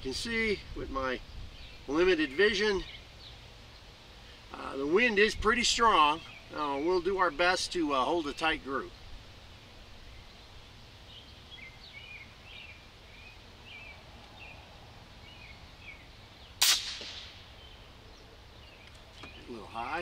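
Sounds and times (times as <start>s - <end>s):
low wind rumble: 0.0s - 20.0s
small bird chirping: 8.0s - 20.0s
air rifle shot: 16.6s - 17.5s.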